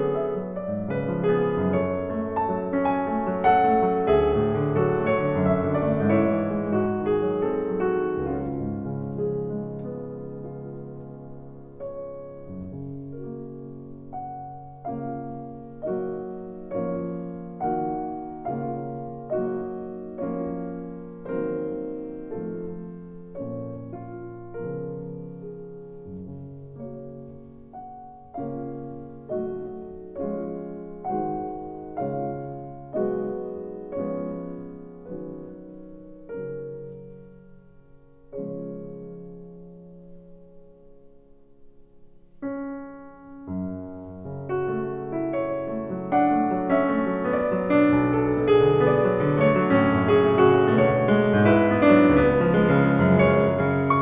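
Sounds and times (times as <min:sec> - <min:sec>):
slow piano music: 0:00.0 - 0:54.0.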